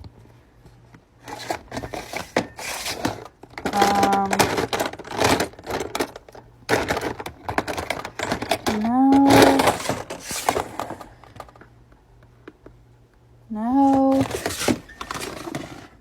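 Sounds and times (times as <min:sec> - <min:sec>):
plastic toys clicking and clattering: 0:01.2 - 0:11.7, 0:13.9 - 0:15.9.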